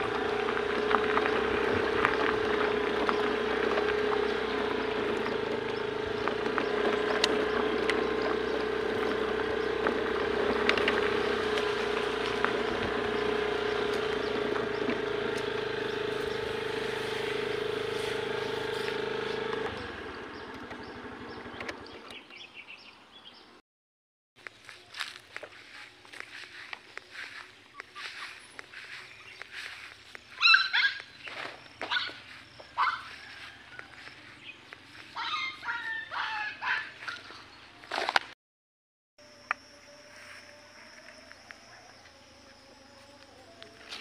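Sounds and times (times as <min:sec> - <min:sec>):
motor humming: 0:00.0 - 0:22.5.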